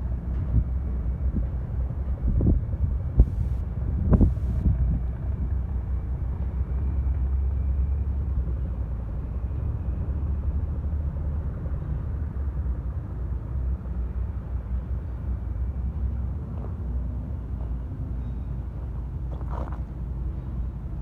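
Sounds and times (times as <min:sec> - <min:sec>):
vehicle engine running: 0:03.2 - 0:04.7.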